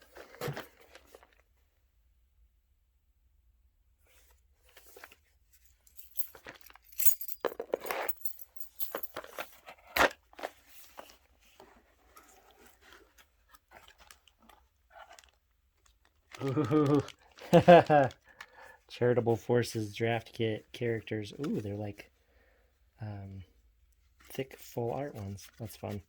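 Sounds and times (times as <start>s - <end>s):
plastic and paper crinkling: 10.3s - 18.6s.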